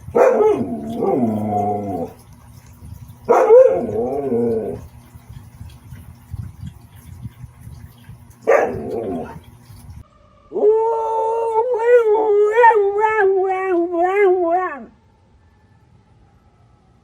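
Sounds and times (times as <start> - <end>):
dog howling: 0.2 - 2.2, 10.2 - 14.9.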